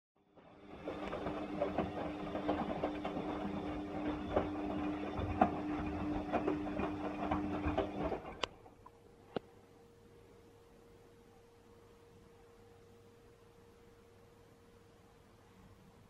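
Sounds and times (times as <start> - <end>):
washing machine running: 0.2 - 8.8.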